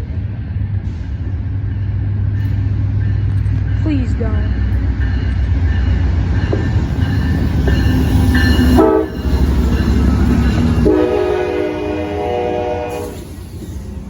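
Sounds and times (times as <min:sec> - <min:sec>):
diesel locomotive rumbling: 0:00.0 - 0:14.0
train horn: 0:08.4 - 0:09.4, 0:10.6 - 0:13.4.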